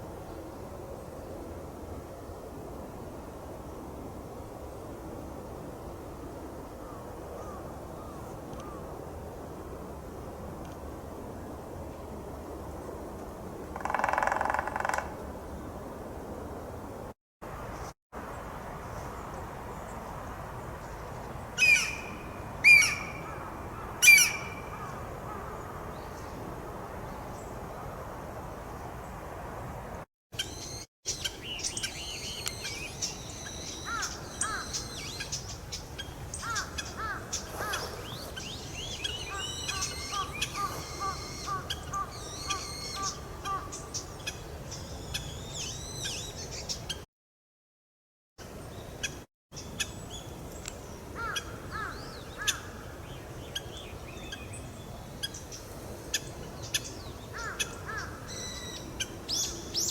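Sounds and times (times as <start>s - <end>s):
loud sharp bird calls: 21.6s - 25.7s, 30.4s - 47.0s, 56.1s - 59.9s
birds chirping and trilling: 21.6s - 26.2s, 30.4s - 47.0s, 48.7s - 59.9s.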